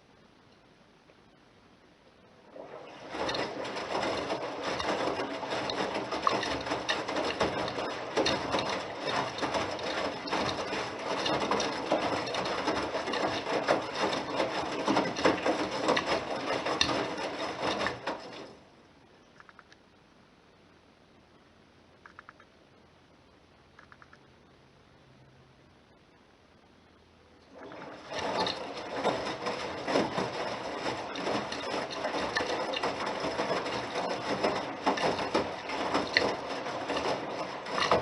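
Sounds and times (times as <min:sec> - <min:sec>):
washing machine drum tumbling laundry: 0:02.4 - 0:18.7, 0:27.5 - 0:38.0.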